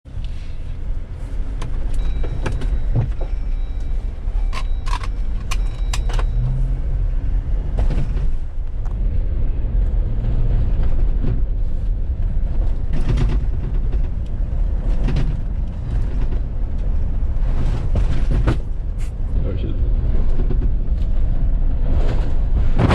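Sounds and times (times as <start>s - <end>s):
vehicle engine low rumble: 0.0s - 22.9s
short knocks and rattles: 12.5s - 19.1s.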